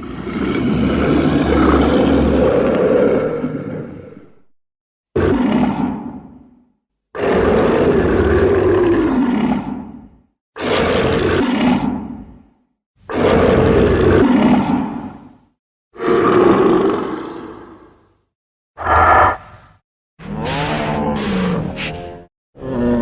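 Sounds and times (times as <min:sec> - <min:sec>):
monster roars: 0:18.8 - 0:19.7.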